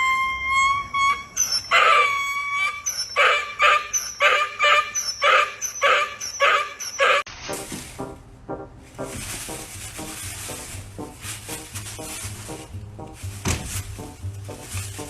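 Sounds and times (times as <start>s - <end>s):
animal calling in high cries: 0.0s - 7.3s.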